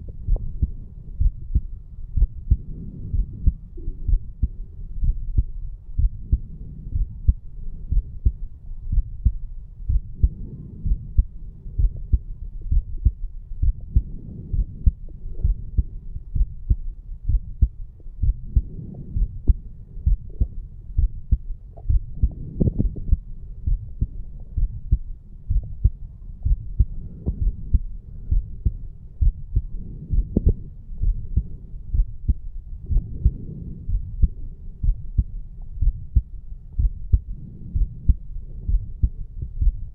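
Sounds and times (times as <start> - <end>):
low thudding heartbeat: 0.0 - 39.9.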